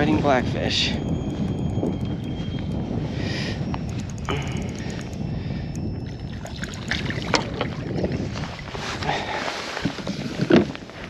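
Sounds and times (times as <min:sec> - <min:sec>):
wind buffeting microphone: 0:00.0 - 0:11.0
water lapping against hull: 0:06.4 - 0:10.8.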